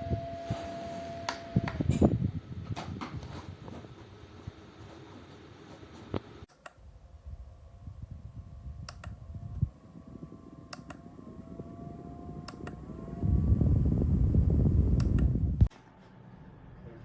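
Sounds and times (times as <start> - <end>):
desk fan airflow rumbling: 0.0 - 15.7
faint rising whines: 7.0 - 17.0.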